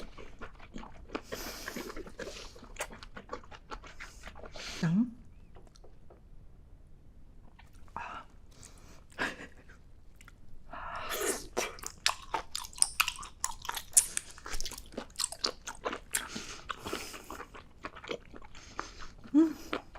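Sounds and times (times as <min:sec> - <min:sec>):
person biting and chewing: 0:00.0 - 0:04.5, 0:11.1 - 0:19.9.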